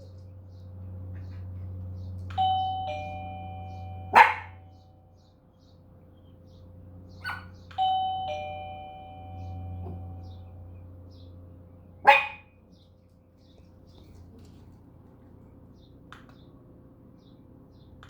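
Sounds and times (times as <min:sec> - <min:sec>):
low steady hum: 0:00.0 - 0:18.0
ding-dong doorbell chime: 0:02.3 - 0:05.0, 0:07.7 - 0:10.8
dog barking: 0:04.1 - 0:04.8, 0:07.2 - 0:07.6, 0:12.0 - 0:12.5.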